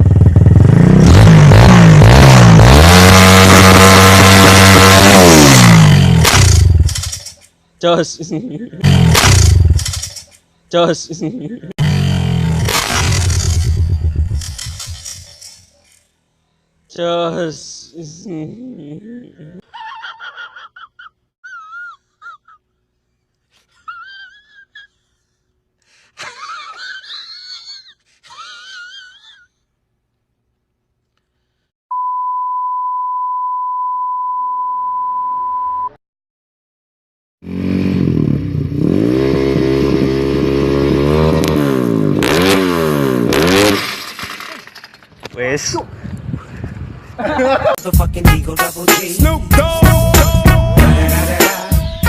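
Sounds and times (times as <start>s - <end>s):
motorcycle engine revving: 0.0s - 7.4s, 8.8s - 10.2s, 11.8s - 15.4s, 37.4s - 45.0s
steady single beep: 31.9s - 36.0s.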